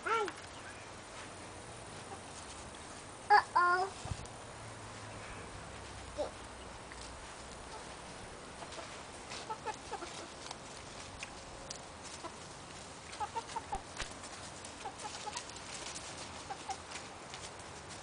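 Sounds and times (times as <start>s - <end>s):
chickens clucking: 1.9s - 2.5s, 7.6s - 17.1s.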